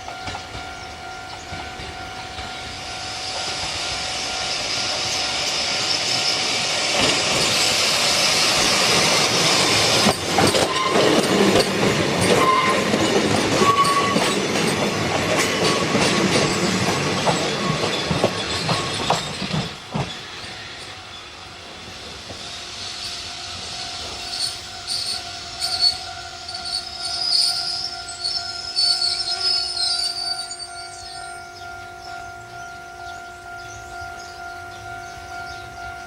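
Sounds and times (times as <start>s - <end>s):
train wheels clacking over rail joints: 0.0s - 21.0s
train wheels squealing: 0.0s - 36.0s.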